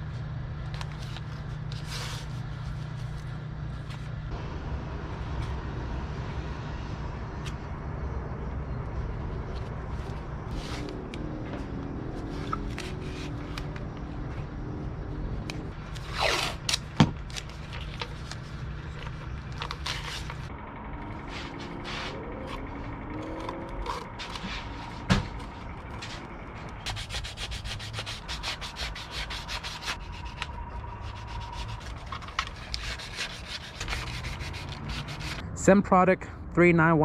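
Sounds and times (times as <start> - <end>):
steady low hum: 0.0 - 36.7.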